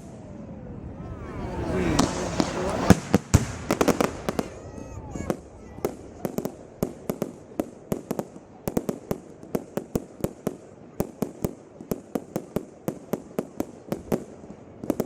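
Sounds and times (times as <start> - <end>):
low rumble: 0.0 - 5.1
fireworks bangs: 0.0 - 15.0.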